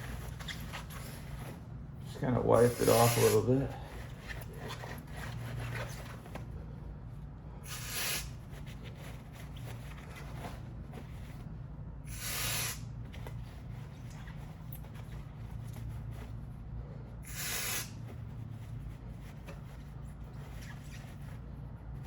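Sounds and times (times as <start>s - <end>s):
aerosol spray hissing: 17.3s - 18.0s.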